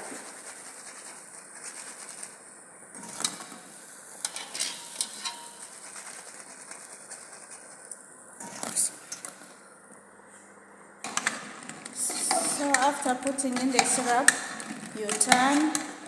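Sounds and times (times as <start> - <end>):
hot oil sizzling: 3.0 - 5.6
utensil clinking against pot: 12.1 - 16.0.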